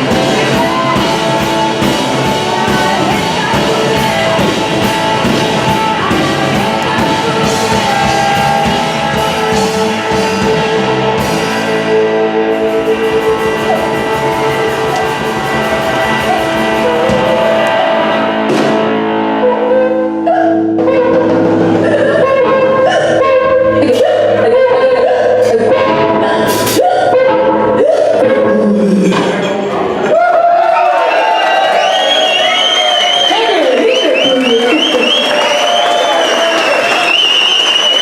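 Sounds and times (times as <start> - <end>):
person singing: 0.0 - 18.4, 19.4 - 29.5
drum kit with cymbals: 0.0 - 19.0
electric guitar: 0.0 - 38.0.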